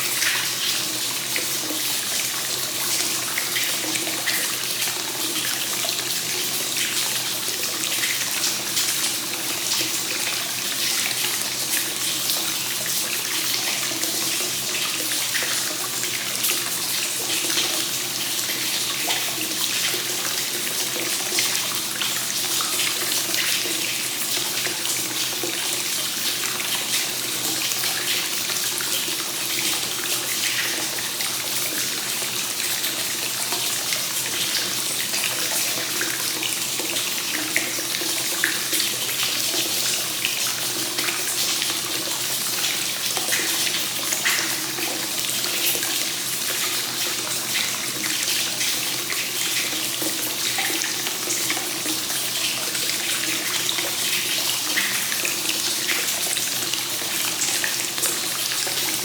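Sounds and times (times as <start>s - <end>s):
water pouring into a bath: 0.0s - 59.0s.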